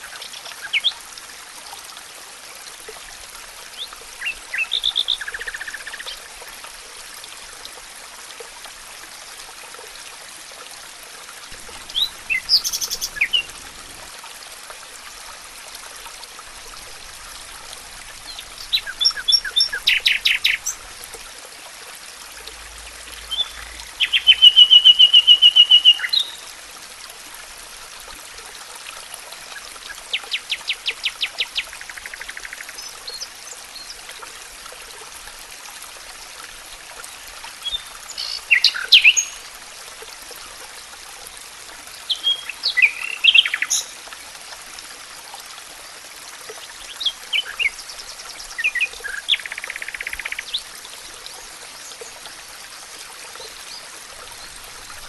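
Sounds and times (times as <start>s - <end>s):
songbirds singing: 11.8s - 13.6s, 18.3s - 20.8s, 23.2s - 26.4s, 37.6s - 39.4s, 42.1s - 43.9s.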